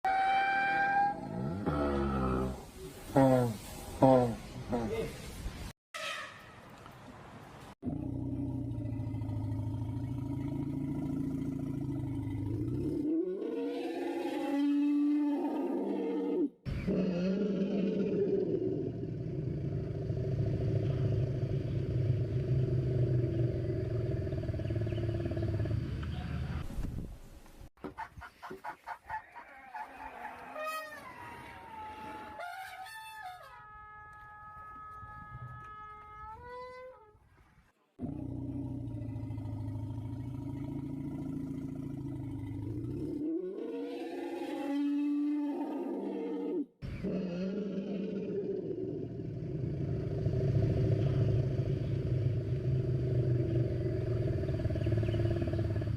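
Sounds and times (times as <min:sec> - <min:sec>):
low pulsing animal rumble: 0:07.9 - 0:12.8, 0:18.9 - 0:26.6, 0:49.0 - 0:55.9.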